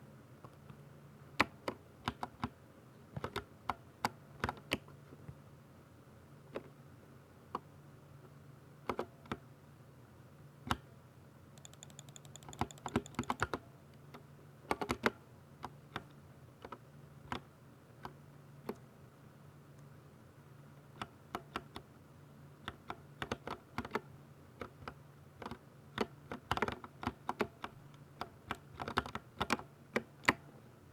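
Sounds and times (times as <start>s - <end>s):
mechanical keyboard keystroke clicks: 11.6s - 13.6s.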